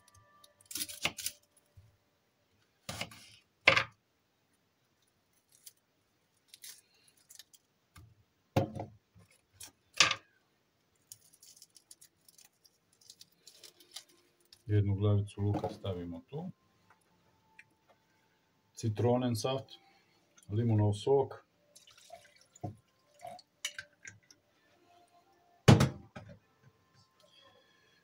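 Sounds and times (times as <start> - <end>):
kitchen items knocking and clinking: 25.7 - 26.4.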